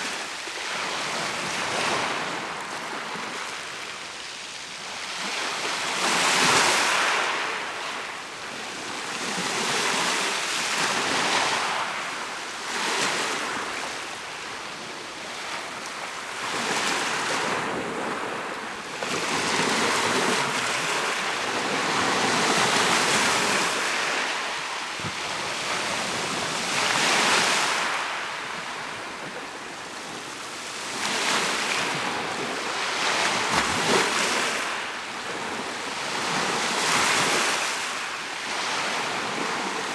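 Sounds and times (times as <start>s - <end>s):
waves breaking on shore: 16.4s - 39.9s.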